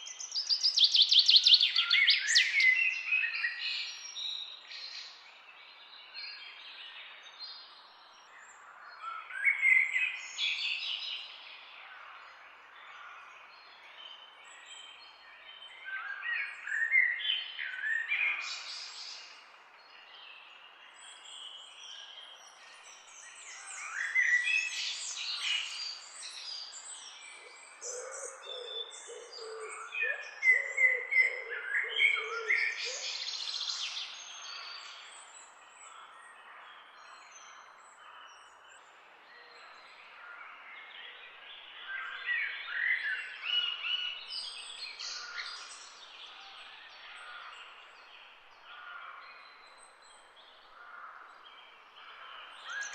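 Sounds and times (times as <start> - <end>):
birds chirping and singing: 14.1 - 52.9.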